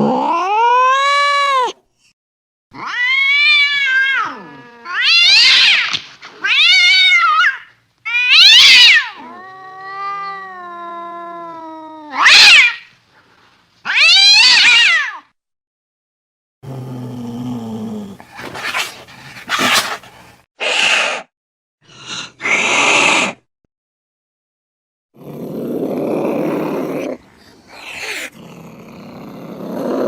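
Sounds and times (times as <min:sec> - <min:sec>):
cat yowling: 0:00.0 - 0:01.8, 0:02.8 - 0:12.9, 0:13.9 - 0:15.3, 0:27.8 - 0:28.3
cat meowing: 0:02.8 - 0:12.9, 0:13.9 - 0:15.2.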